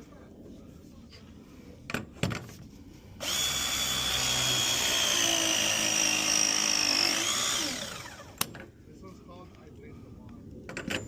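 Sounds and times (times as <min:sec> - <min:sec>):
power tool motor whining: 0:03.2 - 0:08.5.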